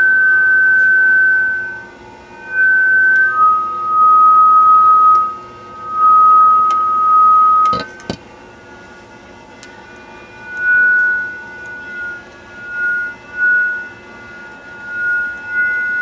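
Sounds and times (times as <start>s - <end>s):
sustained pure tone: 0.0s - 16.0s.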